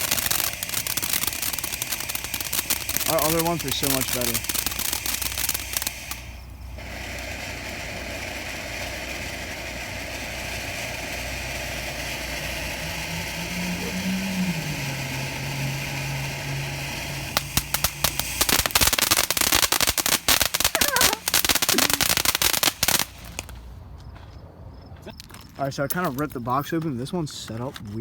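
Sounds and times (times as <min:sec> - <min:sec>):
firework fountain hissing and crackling: 0:00.0 - 0:23.7
passing vehicle engine hum: 0:06.5 - 0:20.1.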